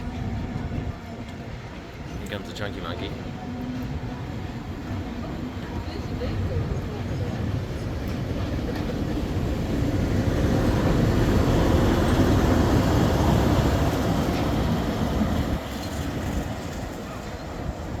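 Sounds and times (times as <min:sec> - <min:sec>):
steam locomotive working: 0:00.0 - 0:18.0.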